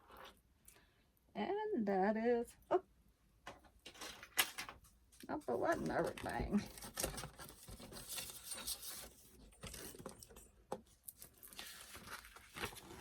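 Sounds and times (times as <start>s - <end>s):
packaging rustling: 5.4s - 13.0s.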